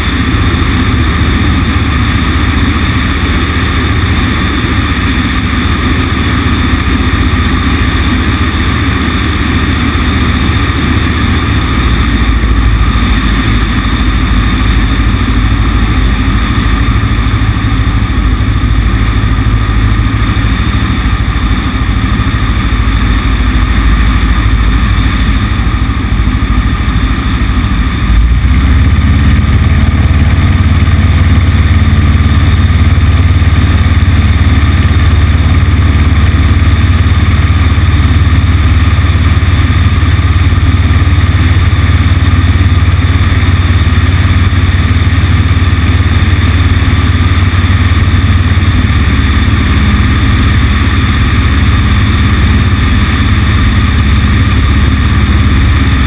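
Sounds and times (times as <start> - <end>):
airplane engine and propeller: 0.0 - 56.0
rush of airflow: 0.0 - 56.0.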